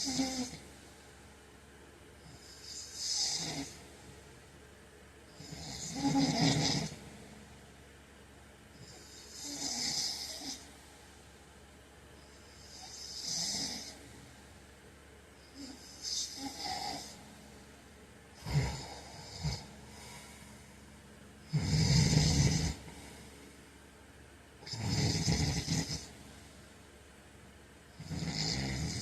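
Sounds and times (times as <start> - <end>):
man snoring: 0.0 - 0.7, 2.2 - 3.9, 5.4 - 7.1, 8.8 - 10.7, 12.6 - 14.1, 15.5 - 17.2, 18.4 - 20.7, 21.4 - 23.3, 24.6 - 26.2, 28.0 - 29.0.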